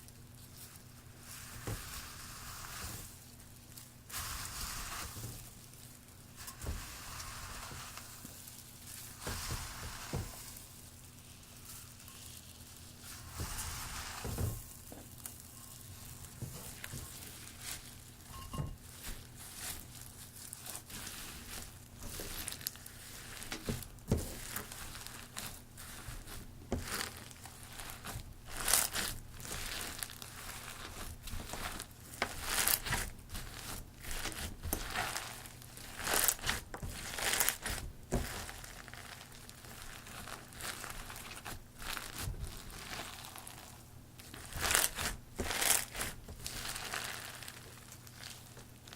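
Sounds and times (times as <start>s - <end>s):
slime crackling and crunching: 0.4s - 48.9s.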